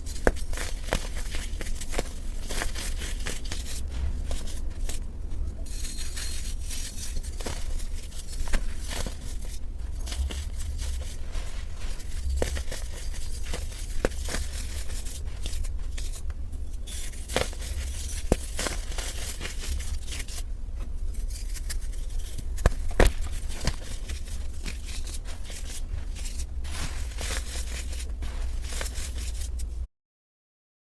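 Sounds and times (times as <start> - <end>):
low steady hum: 0.0 - 29.9
baking soda crackling: 21.1 - 29.9.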